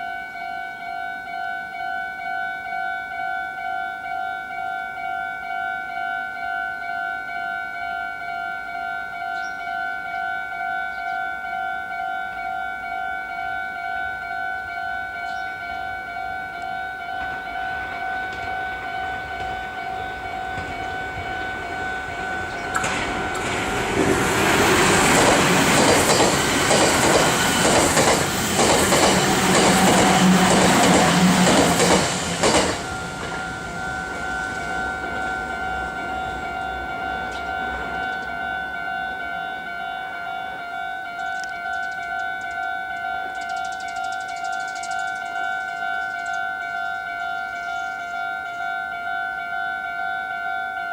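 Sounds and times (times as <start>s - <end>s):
level-crossing alarm dinging: 0.0s - 50.9s
train wheels clicking over rail joints: 17.2s - 38.4s, 41.2s - 46.5s.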